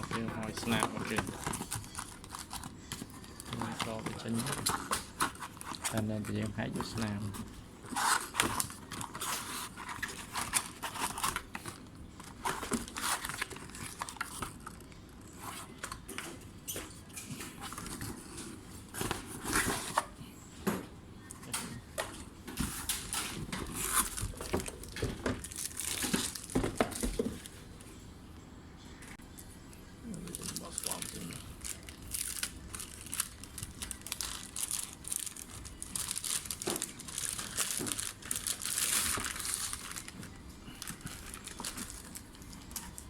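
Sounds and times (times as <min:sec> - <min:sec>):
plastic wrap crinkling: 0:00.0 - 0:14.8, 0:23.3 - 0:27.5, 0:30.1 - 0:43.0.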